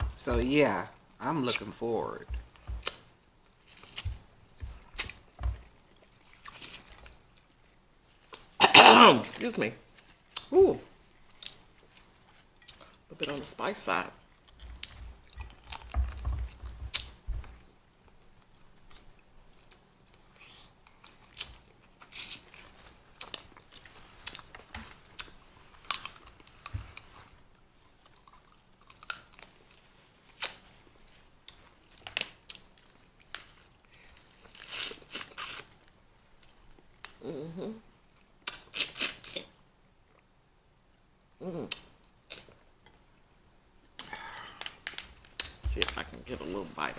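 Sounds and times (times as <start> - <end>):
sharp crunches and clicks: 2.2 - 3.1, 14.5 - 17.6, 44.0 - 46.6
wet chewing and mouth smacks: 2.3 - 8.6, 10.3 - 10.5, 11.3 - 13.4, 14.2 - 17.6, 18.2 - 37.2, 38.0 - 40.3, 41.7 - 43.2, 43.9 - 46.3
person humming: 37.2 - 37.8.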